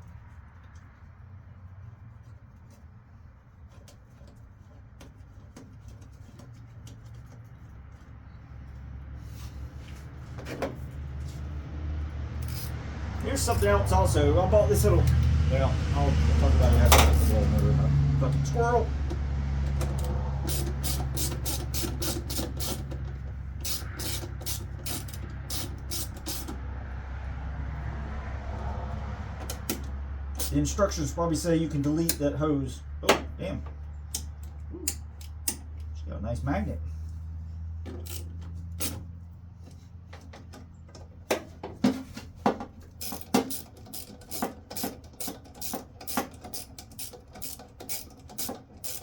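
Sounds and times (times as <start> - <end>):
clicks and taps of tools: 29.4 - 30.5, 33.0 - 35.9, 40.1 - 49.0.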